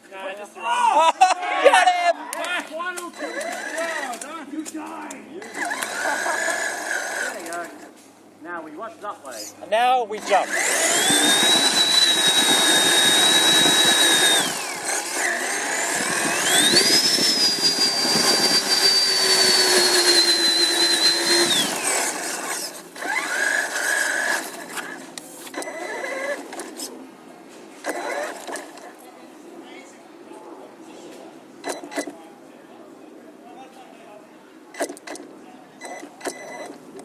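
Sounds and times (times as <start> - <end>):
electric motor whining: 3.0 - 4.2, 5.4 - 8.0, 10.2 - 26.9, 27.8 - 29.0.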